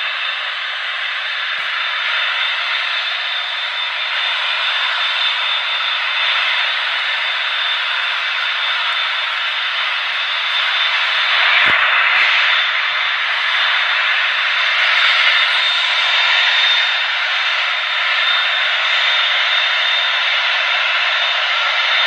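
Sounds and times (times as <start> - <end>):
jet engines running: 0.0 - 22.0.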